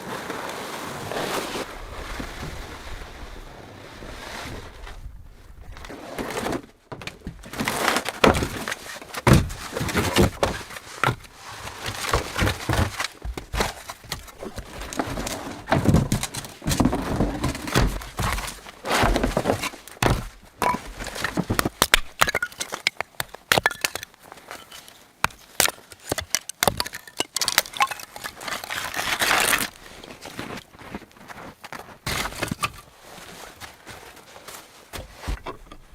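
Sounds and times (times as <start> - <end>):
wood crunching: 4.8 - 35.9
wooden thunks and cracks: 5.8 - 29.8, 35.0 - 35.9.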